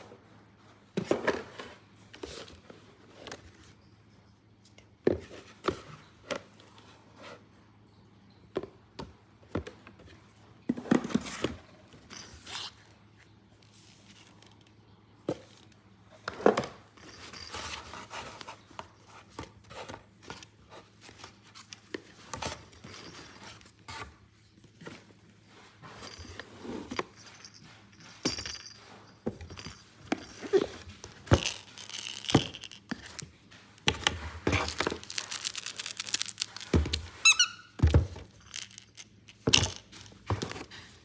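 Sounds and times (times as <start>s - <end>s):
small objects tapping and knocking: 27.0s - 40.9s.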